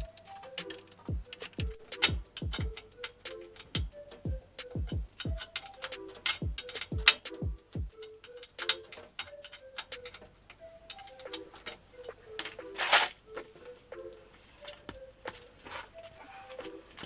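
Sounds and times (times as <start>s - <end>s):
ticking hi-hat: 0.0s - 2.7s
electronic beat: 0.0s - 2.8s, 3.8s - 8.0s.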